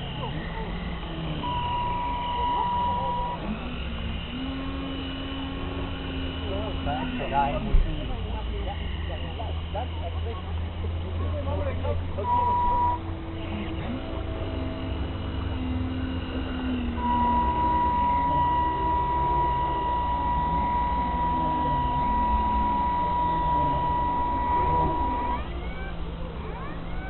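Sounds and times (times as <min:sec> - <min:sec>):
constant low rumble: 0:00.0 - 0:27.0
faint voices: 0:00.0 - 0:27.0
high-pitched electronic tone: 0:01.3 - 0:07.6, 0:12.2 - 0:27.0.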